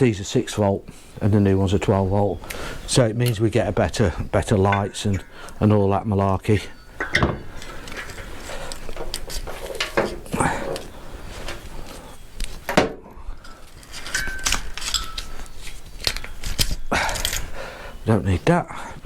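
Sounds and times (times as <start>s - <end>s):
metal engine parts clinking: 4.4s - 11.6s, 13.4s - 17.4s.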